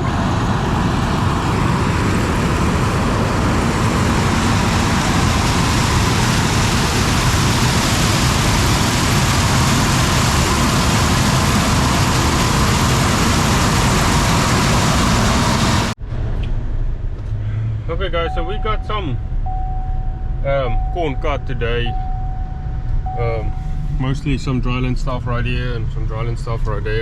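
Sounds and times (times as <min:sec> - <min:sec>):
loud continuous machine noise: 0:00.0 - 0:16.0
combine harvester engine drone: 0:00.0 - 0:27.0.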